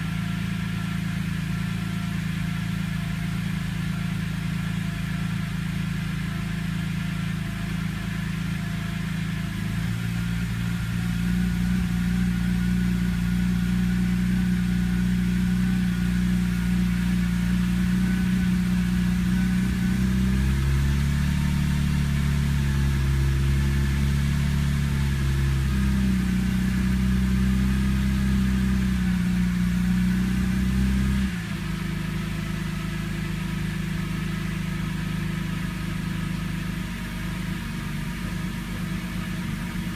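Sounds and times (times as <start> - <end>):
car engine idling roughly: 0.0 - 20.1, 31.3 - 39.9.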